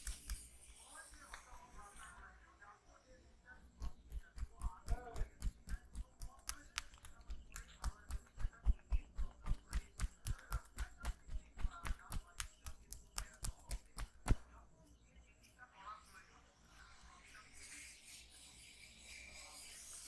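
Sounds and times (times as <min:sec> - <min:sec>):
hands tapping and slapping head: 0:00.0 - 0:00.4, 0:03.8 - 0:14.4.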